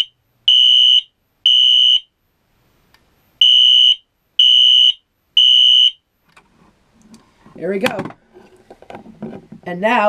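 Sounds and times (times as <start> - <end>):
fire alarm horn beeping: 0.0 - 2.1, 3.4 - 6.0.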